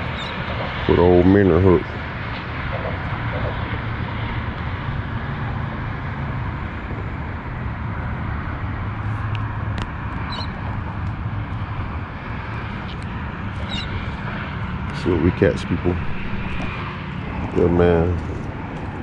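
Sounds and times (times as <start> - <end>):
low outdoor rumble: 0.0 - 19.0.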